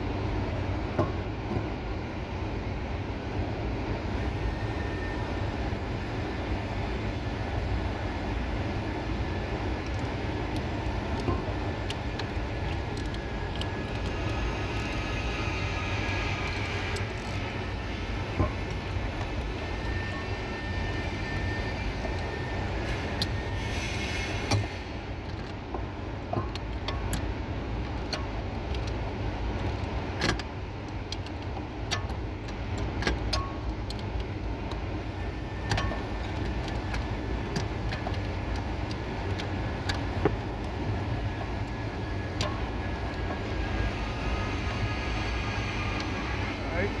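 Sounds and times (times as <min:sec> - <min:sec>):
steady low hum: 0:00.0 - 0:47.0.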